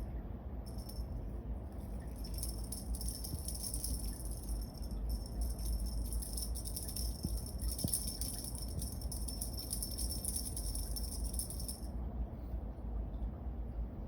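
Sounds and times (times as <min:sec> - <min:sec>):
low steady hum: 0:00.0 - 0:14.0
jingle bell jingling: 0:00.7 - 0:01.1, 0:01.9 - 0:11.9.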